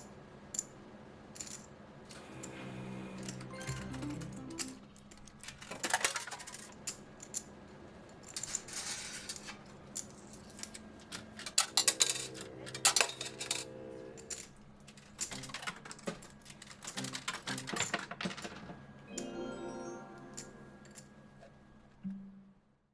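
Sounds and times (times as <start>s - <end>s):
electronic slot-machine tones: 2.3s - 5.1s, 11.7s - 14.3s, 17.0s - 17.8s, 19.1s - 21.1s.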